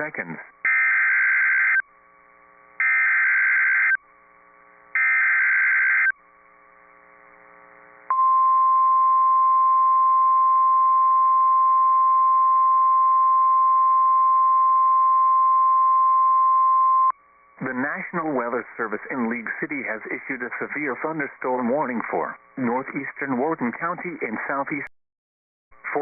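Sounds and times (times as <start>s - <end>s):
steady warning alarm tone: 0.6s - 1.8s, 2.8s - 4.0s, 5.0s - 6.2s.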